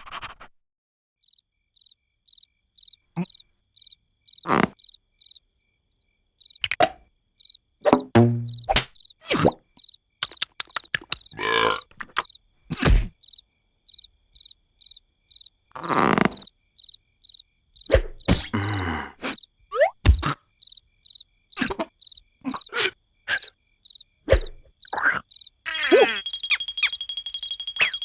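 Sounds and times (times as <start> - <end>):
cricket chirping: 1.2 - 28.0
cartoon knocks and thuds: 6.6 - 7.0, 7.8 - 9.0, 12.0 - 13.1, 20.0 - 20.4.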